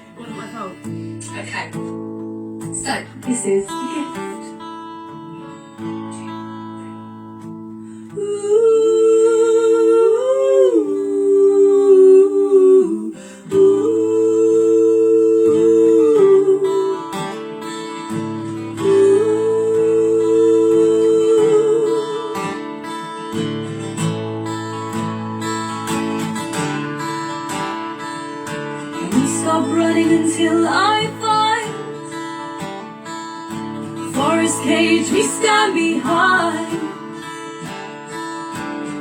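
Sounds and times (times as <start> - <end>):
acoustic guitar: 0.0 - 39.0
wordless vocal harmonies: 7.8 - 24.0, 25.4 - 39.0.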